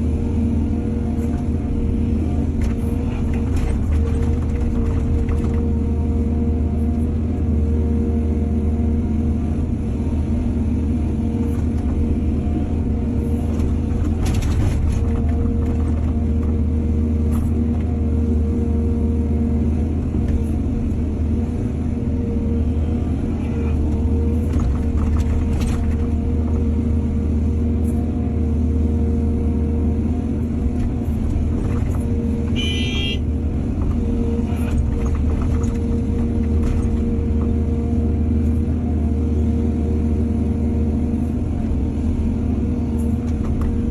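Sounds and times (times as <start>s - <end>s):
diesel engine hum: 0.0s - 43.9s
machinery knocks and clanks: 2.5s - 5.8s, 13.4s - 16.7s, 23.8s - 26.7s, 33.6s - 37.6s.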